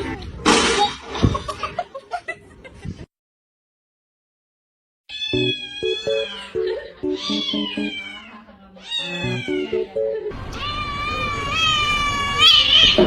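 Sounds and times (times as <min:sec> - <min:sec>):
cat meowing: 0:05.1 - 0:06.5, 0:07.2 - 0:13.0
background music of stepped notes: 0:05.4 - 0:07.9, 0:09.2 - 0:10.3.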